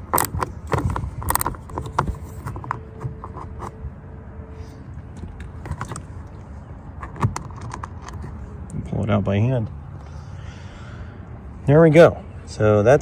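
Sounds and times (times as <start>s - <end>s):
bit driver clicking and scraping: 0.0s - 3.8s.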